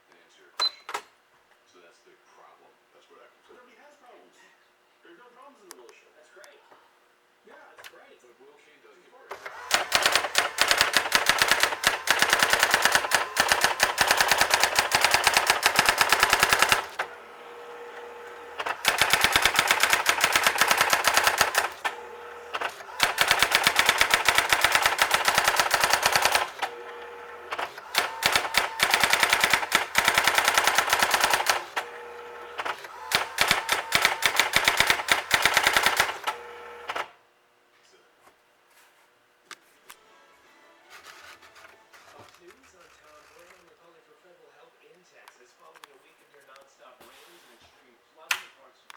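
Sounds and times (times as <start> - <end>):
electric typewriter rapid strikes: 9.4 - 37.1.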